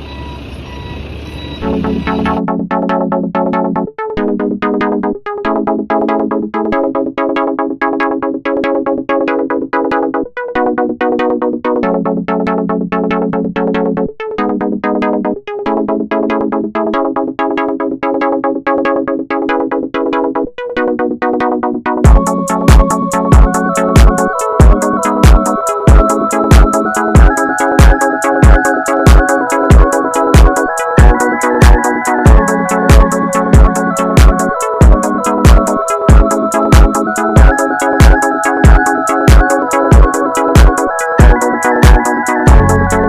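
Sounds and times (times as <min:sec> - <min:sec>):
synthesizer music: 0:01.6 - 0:43.0.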